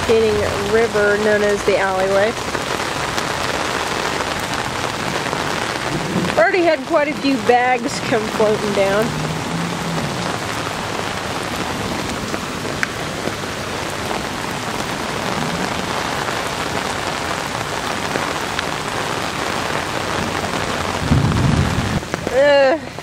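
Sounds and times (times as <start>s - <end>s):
steady rain falling: 0.0s - 23.0s
low rumble: 21.0s - 22.1s.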